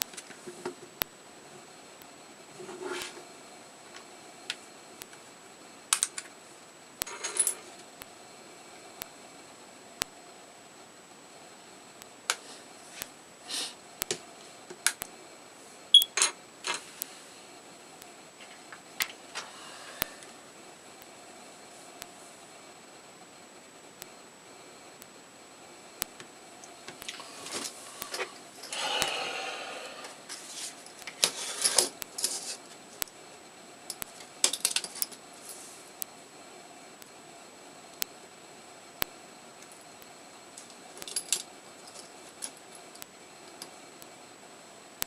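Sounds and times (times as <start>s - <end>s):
sharp clicks and taps: 0.0s - 0.2s, 14.0s - 15.1s
short scrapes: 27.3s - 32.5s.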